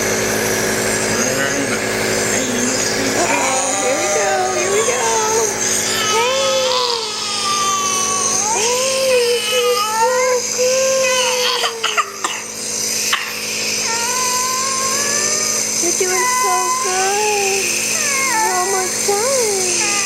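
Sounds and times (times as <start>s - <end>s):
young child crying: 3.0s - 12.4s, 13.8s - 20.0s.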